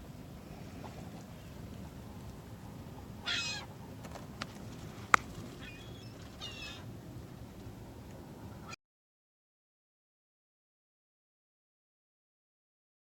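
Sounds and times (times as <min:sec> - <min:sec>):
harsh water bird calls: 0:00.4 - 0:07.1.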